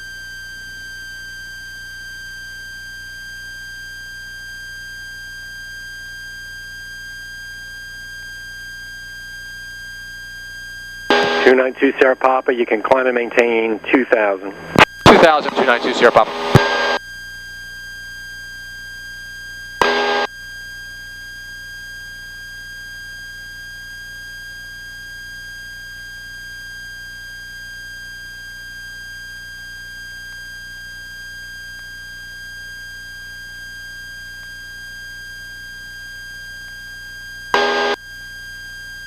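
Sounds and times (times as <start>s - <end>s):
high-pitched electrical whine: 10.9s - 22.2s, 37.3s - 39.0s
loud buzzy bursts: 11.1s - 11.8s, 14.5s - 17.0s, 19.8s - 20.3s, 37.6s - 38.0s.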